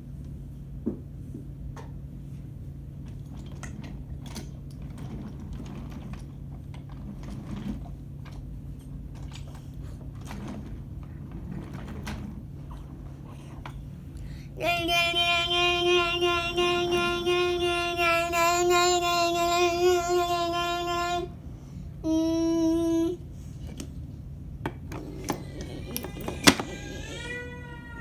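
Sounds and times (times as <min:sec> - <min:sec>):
steady low hum: 0:07.9 - 0:28.0.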